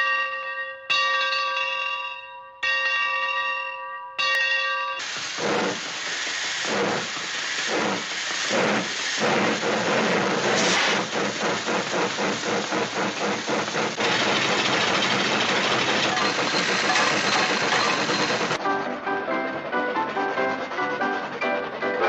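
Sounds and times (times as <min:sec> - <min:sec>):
steady rushing hiss: 0:05.0 - 0:22.0
steam train chugging: 0:05.0 - 0:22.0.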